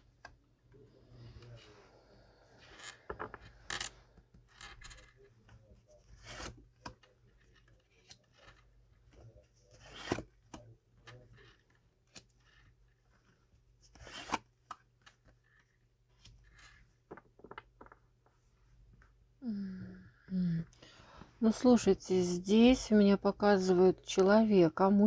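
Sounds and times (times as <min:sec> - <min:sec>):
cards rustling and sliding on table: 0:02.6 - 0:05.1, 0:12.1 - 0:14.5.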